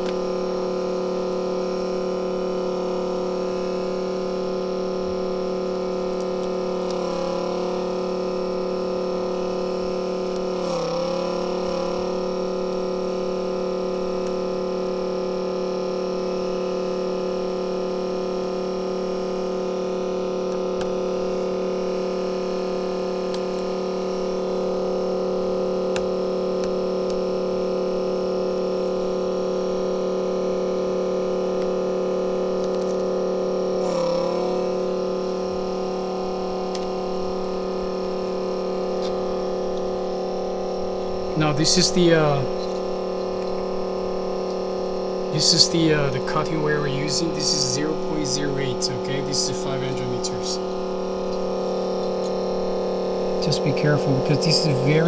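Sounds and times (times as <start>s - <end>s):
steady electrical hum: 0.0s - 55.0s.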